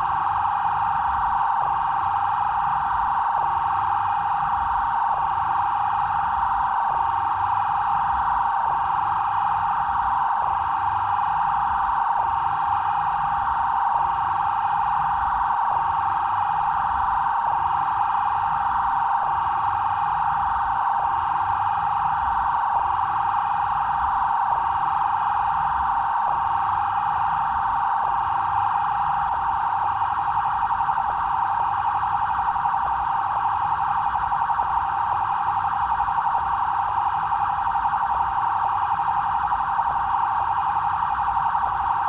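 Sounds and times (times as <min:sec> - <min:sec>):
police siren steady electronic tone: 0:00.0 - 0:42.0.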